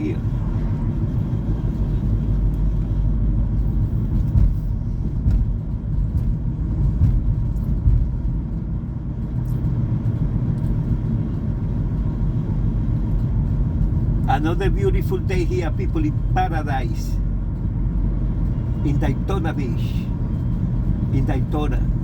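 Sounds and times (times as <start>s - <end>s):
car road and engine noise: 0.0s - 22.0s.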